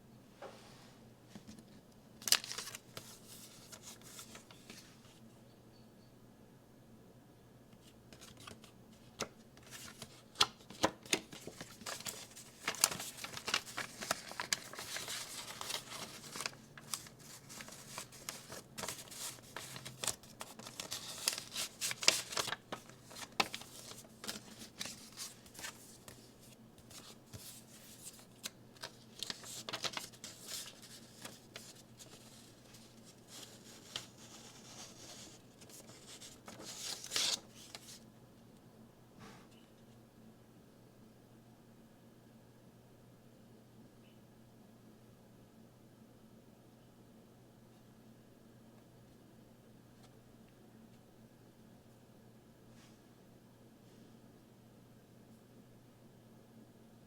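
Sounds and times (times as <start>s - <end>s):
paper and plastic rustling: 1.4s - 5.2s, 7.8s - 38.0s.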